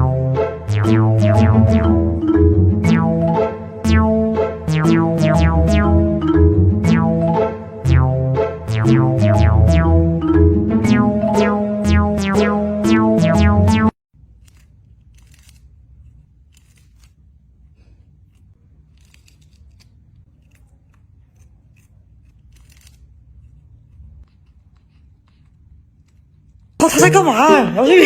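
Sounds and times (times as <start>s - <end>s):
music with plucked notes: 0.0s - 14.0s.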